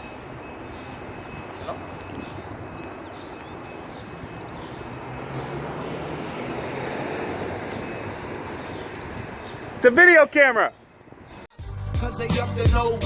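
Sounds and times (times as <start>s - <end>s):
street traffic noise: 0.0s - 11.5s
vehicle engine passing: 0.6s - 10.0s.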